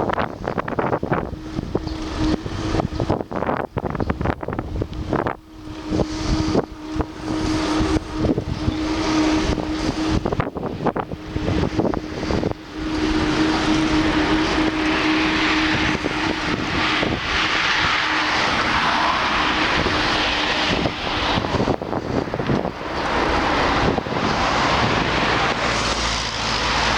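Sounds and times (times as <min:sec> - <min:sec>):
moving car rushing: 0:00.0 - 0:26.9
steady low drone: 0:00.0 - 0:26.9
wind buffeting microphone: 0:00.0 - 0:26.9.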